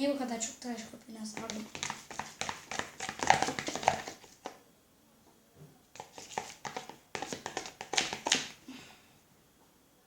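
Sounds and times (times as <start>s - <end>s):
slime being stirred: 0.8s - 4.6s, 5.9s - 8.6s.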